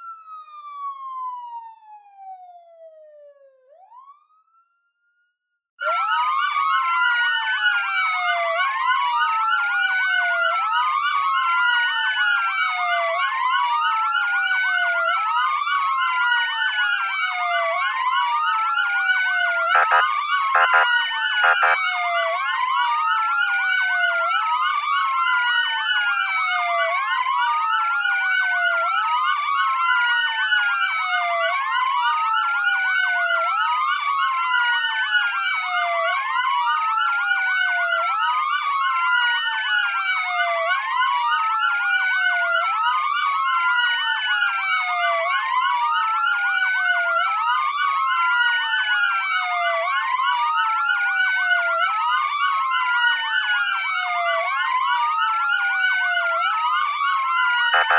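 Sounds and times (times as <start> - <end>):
fast sweeping siren tones: 5.8 - 13.0, 16.0 - 23.2, 56.3 - 57.9
electronic siren wailing: 5.8 - 57.9.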